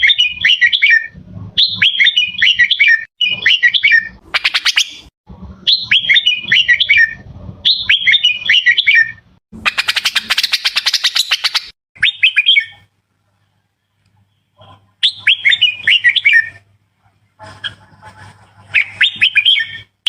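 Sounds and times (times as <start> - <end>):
bird chattering: 8.9 - 12.8
bird singing whistled phrases: 9.8 - 12.8, 18.8 - 19.9.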